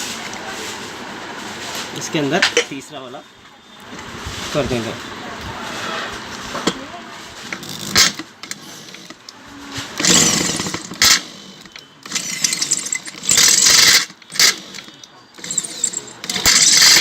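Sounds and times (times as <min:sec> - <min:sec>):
electric drill boring metal: 0:07.5 - 0:09.2, 0:10.0 - 0:17.0.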